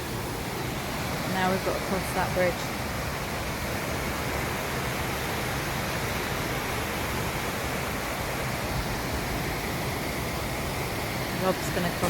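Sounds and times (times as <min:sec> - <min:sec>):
river rapids rushing: 0:00.0 - 0:12.0.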